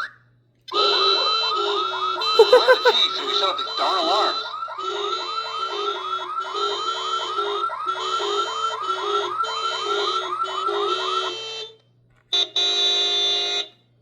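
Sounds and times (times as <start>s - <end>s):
electronic alarm chirps: 1.9s - 11.8s.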